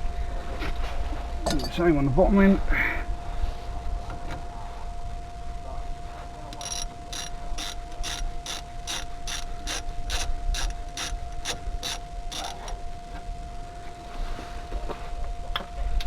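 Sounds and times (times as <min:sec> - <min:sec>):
faint steady whine: 0:00.0 - 0:16.0
ratchet wrench clicking: 0:06.6 - 0:12.8.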